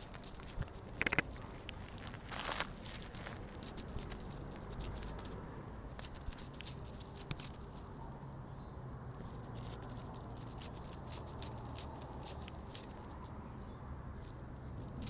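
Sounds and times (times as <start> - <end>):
fluttering wing clicks: 0.2 - 1.4.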